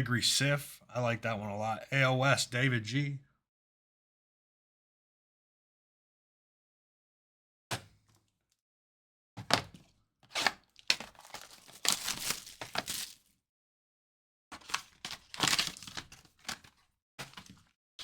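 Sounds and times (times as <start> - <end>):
packaging torn and crinkled: 10.4 - 13.3, 14.6 - 16.6.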